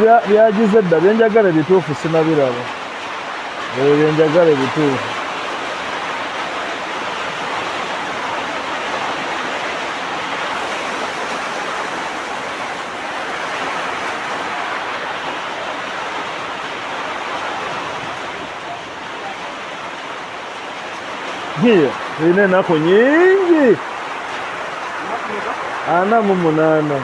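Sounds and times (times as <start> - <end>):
heavy rain: 0.0 - 27.0.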